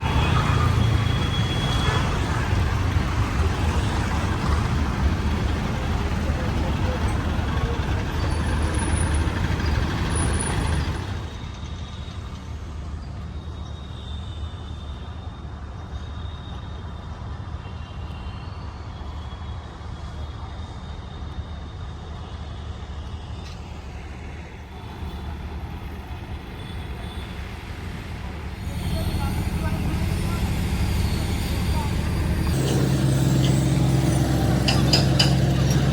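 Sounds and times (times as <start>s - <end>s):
heavy diesel engine running: 0.0s - 12.2s, 23.7s - 35.9s.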